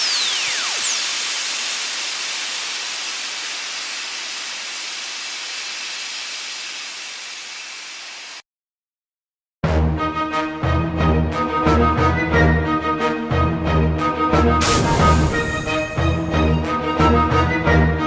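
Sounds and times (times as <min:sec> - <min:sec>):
hiss of noise: 0:00.0 - 0:08.4.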